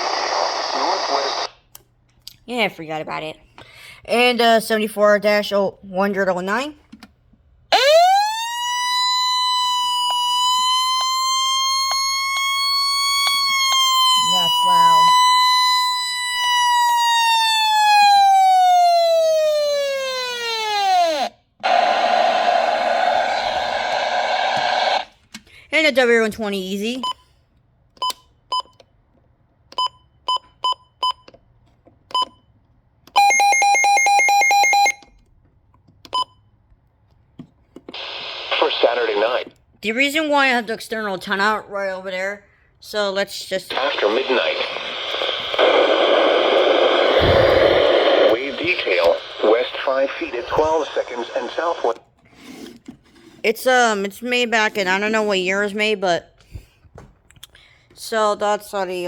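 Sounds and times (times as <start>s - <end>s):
rapid pulsing alarm tone: 7.8s - 19.8s, 33.2s - 35.0s
weather radio siren: 7.8s - 25.0s, 33.2s - 35.0s, 43.7s - 52.0s
short beeps: 33.2s - 35.1s.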